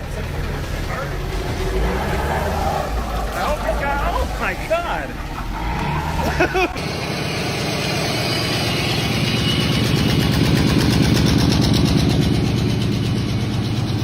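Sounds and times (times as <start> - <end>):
car engine running: 0.0 - 14.0.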